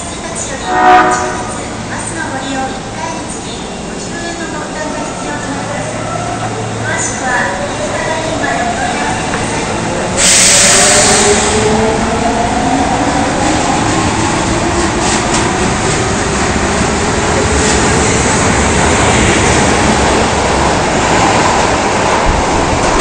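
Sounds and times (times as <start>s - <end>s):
train rumble: 0.0s - 23.0s
train air rush and wheel noise: 7.8s - 23.0s.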